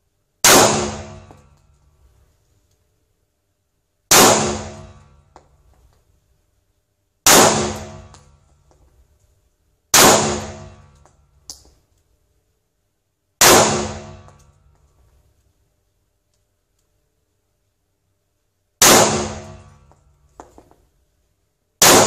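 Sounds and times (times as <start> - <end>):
pistol shots ringing: 0.4 - 1.6, 4.1 - 5.2, 7.3 - 8.4, 9.9 - 11.0, 13.4 - 14.4, 18.8 - 19.9, 21.8 - 22.0.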